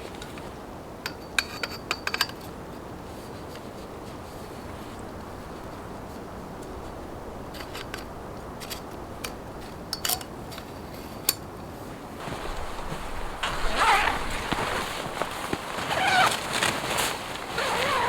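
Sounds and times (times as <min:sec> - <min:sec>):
crunching and scraping in snow: 0:12.2 - 0:18.0.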